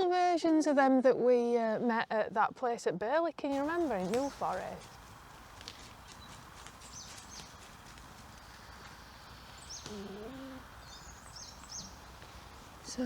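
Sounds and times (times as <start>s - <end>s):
high bird chirps: 6.0s - 7.8s, 8.4s - 13.0s.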